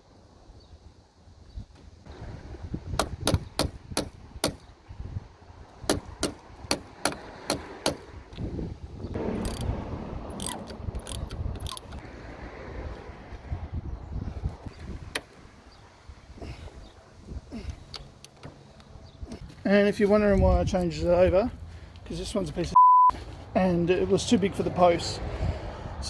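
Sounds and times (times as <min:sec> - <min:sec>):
ratchet spanner clicking: 0:09.4 - 0:09.7, 0:10.3 - 0:12.0.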